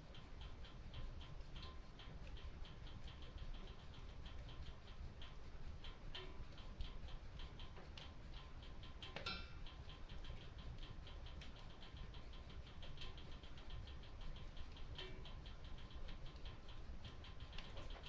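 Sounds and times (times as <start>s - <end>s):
low steady rumble: 0.0s - 18.0s.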